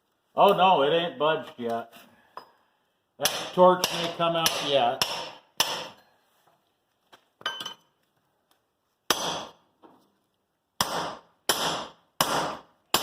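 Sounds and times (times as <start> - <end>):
hammer striking chisel: 3.2 - 6.0, 9.1 - 9.6, 10.8 - 13.0.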